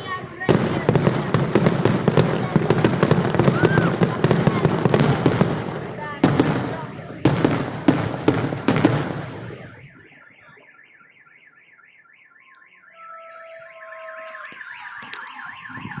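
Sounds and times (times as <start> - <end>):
car alarm warbling: 0.0 - 16.0
steady alarm tones: 0.0 - 16.0
firework bang: 0.4 - 10.1.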